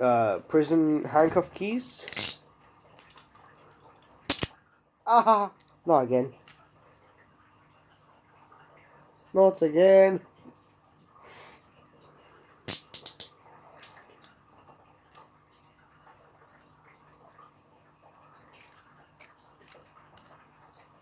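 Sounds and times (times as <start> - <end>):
metal handcuffs clicking: 2.1 - 2.4, 3.0 - 4.5, 12.7 - 14.0, 18.6 - 20.4.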